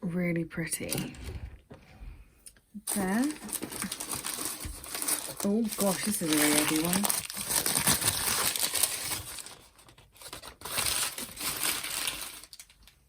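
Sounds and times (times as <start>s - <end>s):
packaging crinkling: 2.9s - 13.0s.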